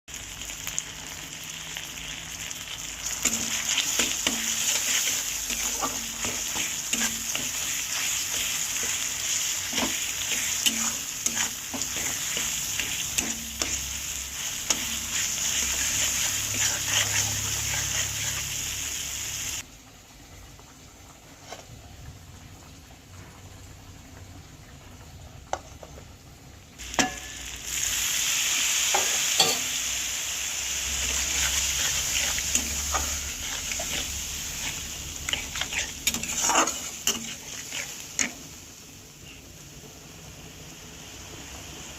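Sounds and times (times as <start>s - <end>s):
vegetables sizzling in oil: 0.1s - 41.9s
spatula scraping a pan: 3.2s - 18.8s, 30.8s - 38.5s.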